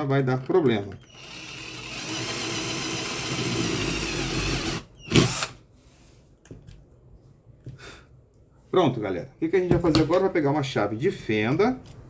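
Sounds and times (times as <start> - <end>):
electric drill drilling plastic: 1.0 - 5.6.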